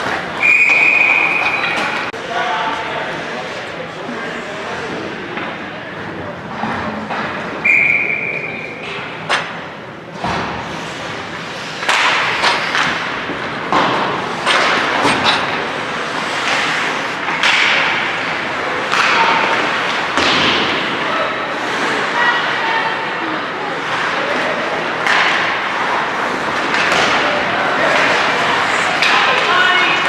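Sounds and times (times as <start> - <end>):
bursts of noise in a hall: 0.0 - 30.0
whistle blowing high note: 0.4 - 1.8, 7.6 - 8.7.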